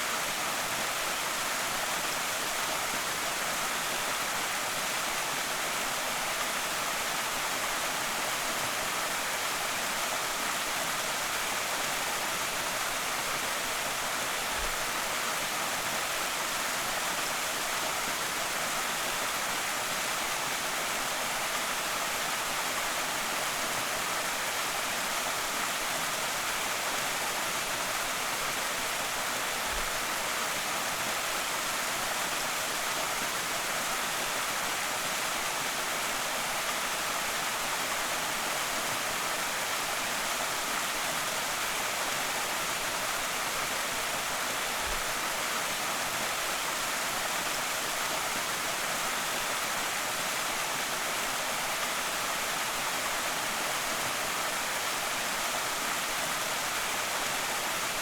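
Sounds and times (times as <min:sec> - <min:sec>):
waterfall rushing over rock: 0:00.0 - 0:58.0.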